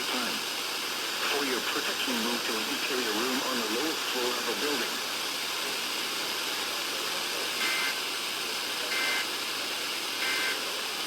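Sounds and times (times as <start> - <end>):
radio hiss: 0.0 - 11.0
two-tone digital bursts: 7.6 - 8.0, 8.9 - 9.3, 10.2 - 10.6.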